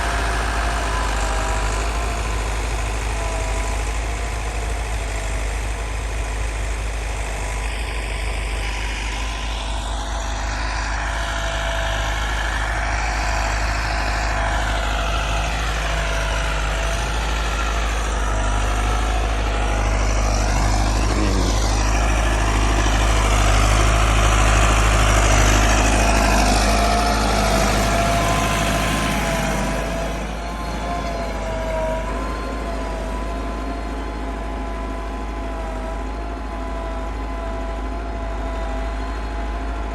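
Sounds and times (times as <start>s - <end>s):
tractor diesel engine running: 0.0s - 39.9s.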